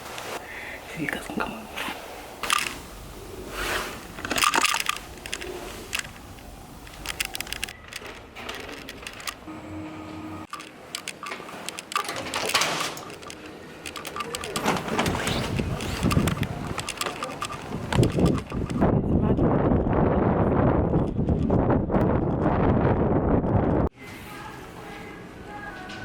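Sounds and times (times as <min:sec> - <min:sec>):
rustling and clicking handling noises: 0:01.8 - 0:02.9, 0:03.8 - 0:09.5, 0:10.5 - 0:18.8
low hum: 0:04.8 - 0:12.1.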